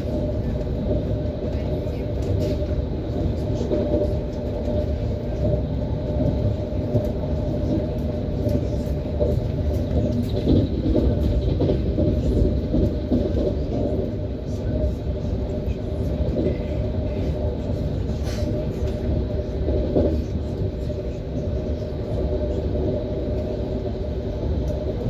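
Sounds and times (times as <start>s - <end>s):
train wheels rumbling on rails: 0.0s - 25.0s.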